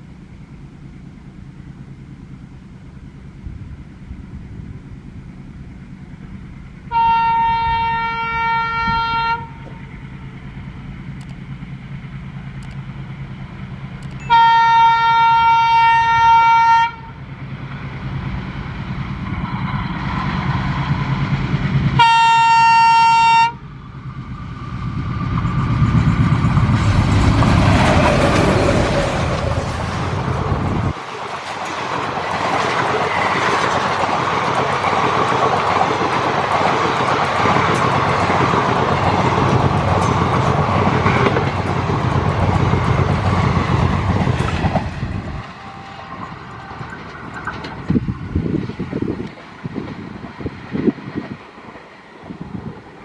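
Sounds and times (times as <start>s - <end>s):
diesel engine rumble: 0.0s - 6.9s, 23.6s - 31.3s
locomotive air horn blasts: 6.9s - 9.8s, 14.2s - 17.2s, 22.0s - 23.7s, 45.4s - 47.2s
train wheels clattering on rails: 24.0s - 53.0s.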